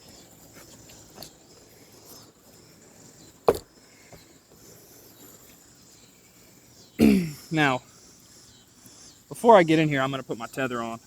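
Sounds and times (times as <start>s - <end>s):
gear knocking against tree trunk: 3.4s - 4.3s.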